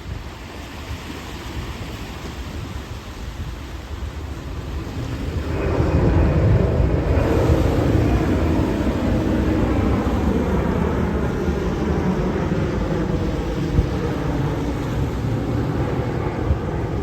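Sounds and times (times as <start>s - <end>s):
jet airliner engines: 0.0s - 17.0s
wind on microphone: 0.0s - 17.0s
low steady hum: 4.8s - 17.0s.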